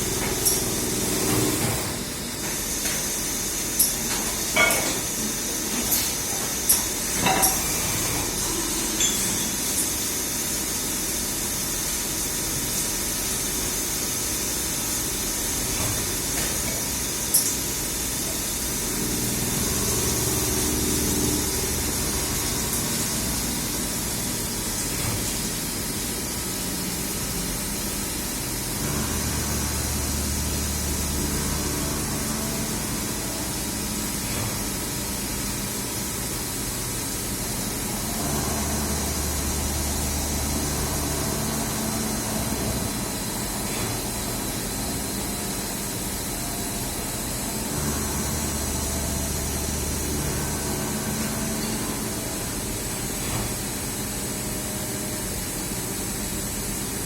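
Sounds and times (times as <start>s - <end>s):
machinery hiss: 0.0s - 57.0s
low machine hum: 18.3s - 26.2s, 28.6s - 36.2s, 37.1s - 57.0s.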